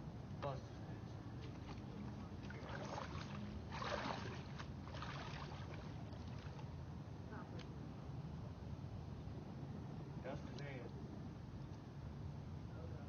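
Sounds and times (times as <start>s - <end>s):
water sloshing and splashing: 1.4s - 6.8s.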